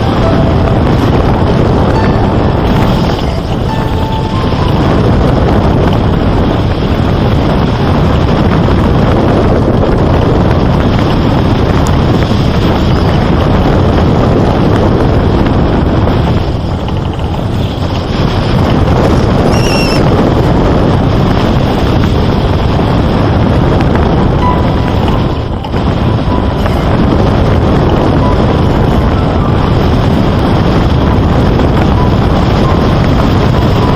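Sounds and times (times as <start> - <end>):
loud steady rushing noise: 0.0 - 33.9
brief high chirp: 19.5 - 20.0.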